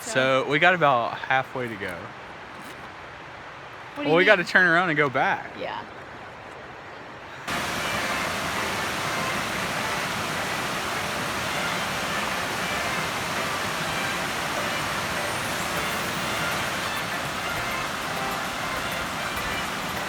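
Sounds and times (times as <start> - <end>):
creek water flowing: 0.0 - 20.0.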